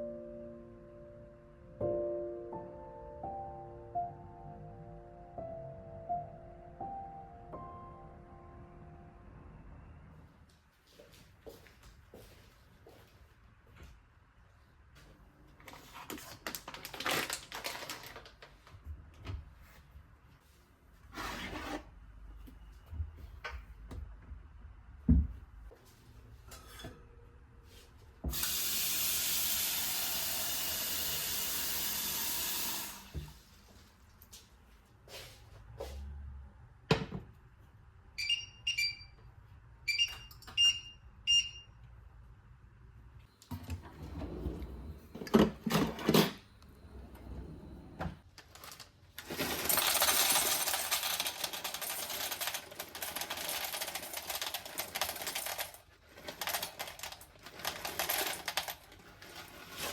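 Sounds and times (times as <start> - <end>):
water tap running: 28.3 - 33.4.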